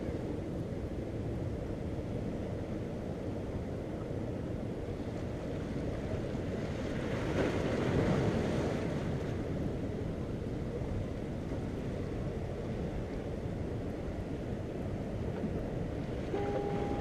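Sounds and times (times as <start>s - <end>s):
wind rumble on microphone: 0.0s - 17.0s
ocean surf washing against jetty: 4.8s - 17.0s
wave breaking: 16.1s - 17.0s.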